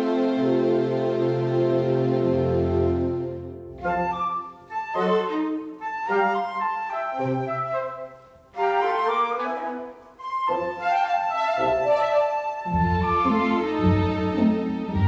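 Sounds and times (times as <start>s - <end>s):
orchestral music with flute melody: 0.0s - 15.0s.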